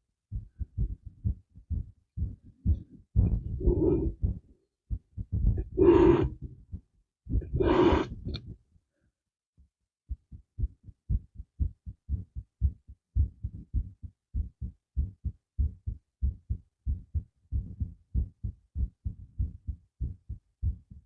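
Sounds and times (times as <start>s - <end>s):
heartbeat thumps: 0.3s - 8.6s, 10.1s - 21.0s
breath blown out: 3.6s - 4.2s, 5.6s - 6.4s, 7.4s - 8.2s.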